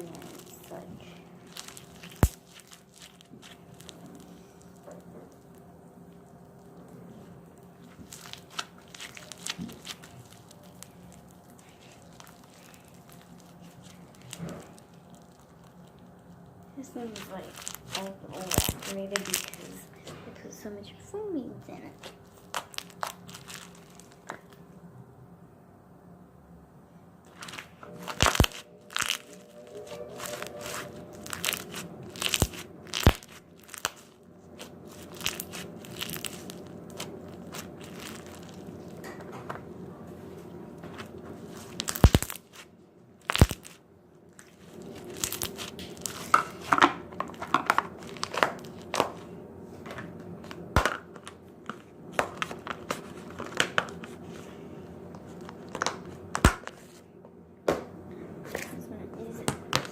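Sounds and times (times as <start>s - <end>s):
slime crunching and popping: 0.0s - 6.8s, 7.6s - 19.9s, 22.0s - 24.6s, 27.3s - 39.2s, 40.9s - 49.4s, 55.2s - 56.9s.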